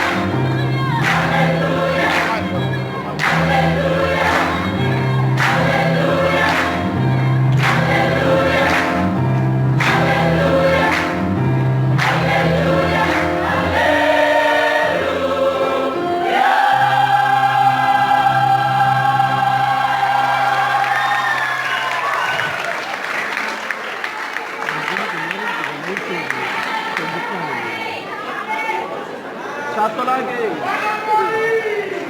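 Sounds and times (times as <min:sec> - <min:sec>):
choir singing in parts: 0:00.0 - 0:21.8.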